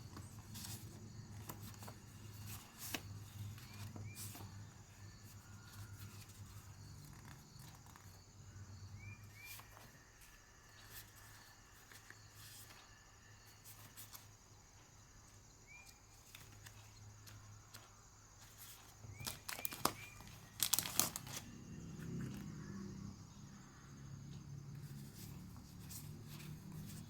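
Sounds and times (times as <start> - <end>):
faint steady hum: 0.0 - 27.0
packaging crinkling: 19.1 - 21.5.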